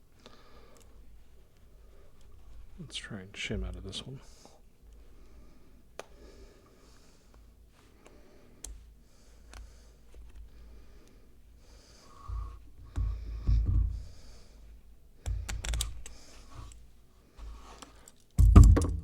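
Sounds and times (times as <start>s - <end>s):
dull handling thumps: 12.2s - 14.3s, 18.4s - 19.0s.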